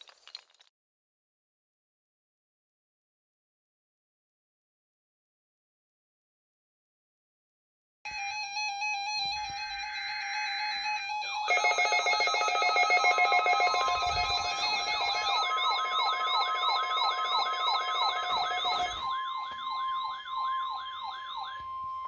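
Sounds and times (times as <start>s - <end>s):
siren-like falling sweeps: 11.5s - 22.0s
steady beeping: 11.5s - 22.0s
steady warning alarm tone: 11.5s - 22.0s.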